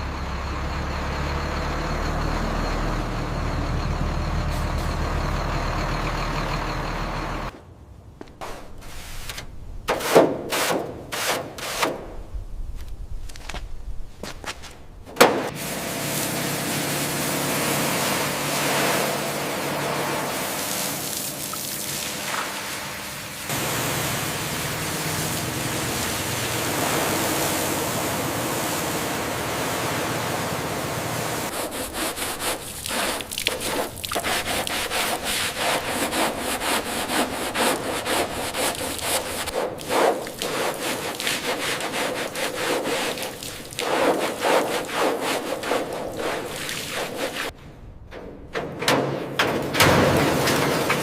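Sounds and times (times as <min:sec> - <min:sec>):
quick scraping strokes: 0:31.5 - 0:47.6.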